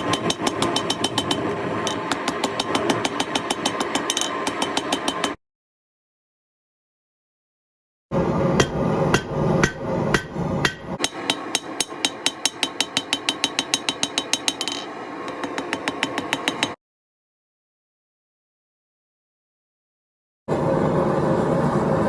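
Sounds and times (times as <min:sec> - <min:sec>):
hammer striking steel on anvil: 0:00.0 - 0:05.4, 0:08.6 - 0:16.8.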